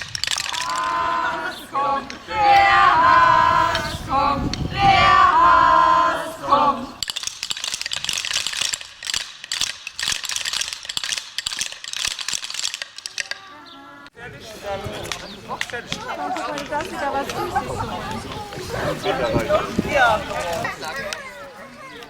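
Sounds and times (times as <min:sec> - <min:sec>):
wooden rattles clattering: 0:00.0 - 0:00.9, 0:07.0 - 0:13.5
children chanting: 0:00.4 - 0:07.0, 0:13.2 - 0:22.0.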